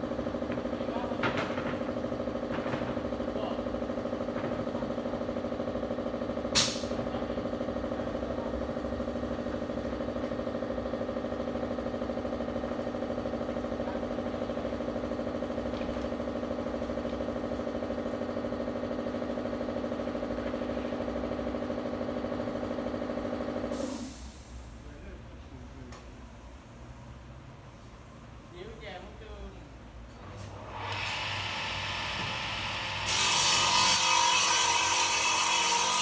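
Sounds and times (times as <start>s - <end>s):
sharp click: 6.6s - 6.9s
table saw motor humming: 30.7s - 36.0s.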